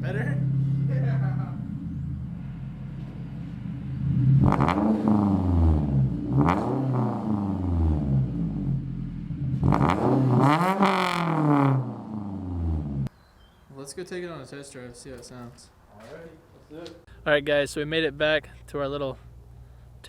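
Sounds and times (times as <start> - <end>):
car engine idling and revving: 0.0 - 13.1.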